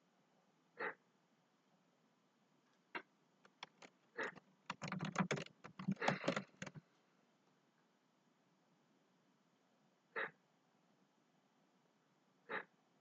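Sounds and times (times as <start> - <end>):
computer keyboard typing: 3.5 - 6.8.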